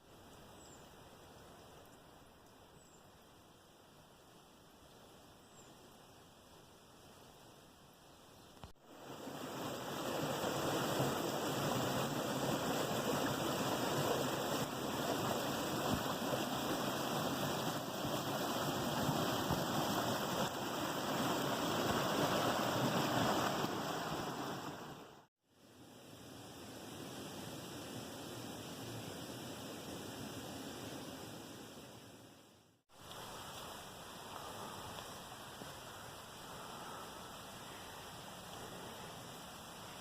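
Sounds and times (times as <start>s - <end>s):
running water rushing: 8.7s - 32.2s, 32.9s - 40.0s.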